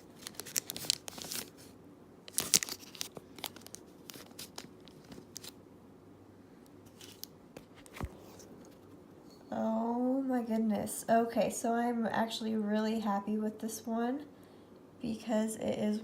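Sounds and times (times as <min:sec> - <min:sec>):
plastic baggie crinkling: 0:00.0 - 0:01.7, 0:02.3 - 0:05.6.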